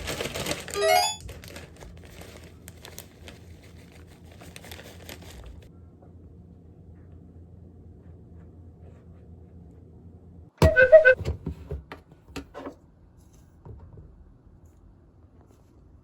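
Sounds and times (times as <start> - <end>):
low steady hum: 0.0 - 11.4.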